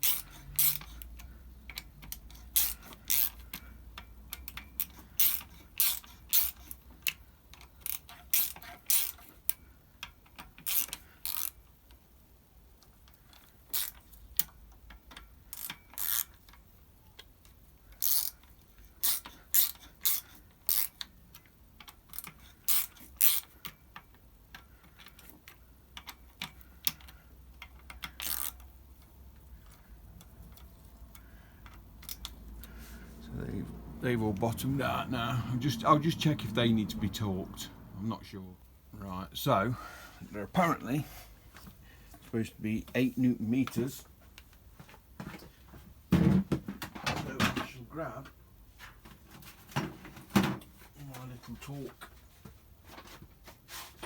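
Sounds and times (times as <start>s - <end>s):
ratcheting hand tool clicking: 0.0s - 12.0s, 12.8s - 16.6s, 17.2s - 32.8s.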